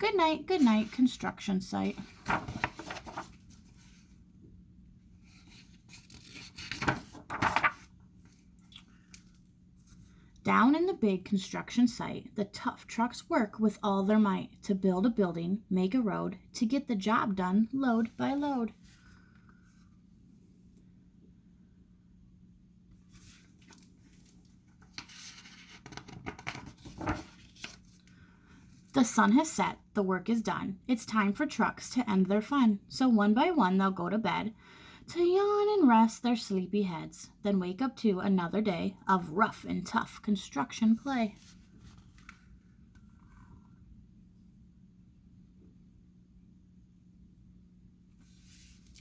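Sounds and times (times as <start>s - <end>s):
faint low hum: 0.0s - 49.0s
book pages rustling and turning: 0.2s - 1.2s, 1.8s - 4.2s, 5.2s - 10.2s, 23.0s - 28.2s, 41.2s - 43.4s, 48.2s - 49.0s.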